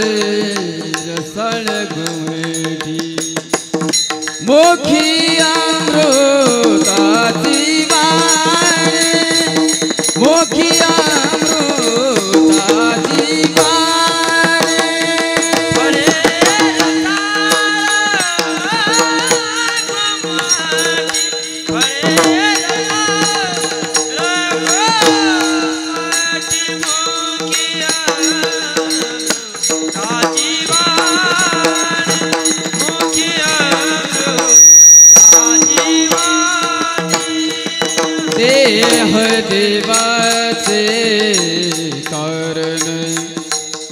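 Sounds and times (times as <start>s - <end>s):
tabla: 0.0s - 43.9s
small hand cymbals: 3.2s - 39.1s
sliding melody line: 30.4s - 39.7s
loud high-pitched whistle: 34.4s - 36.8s.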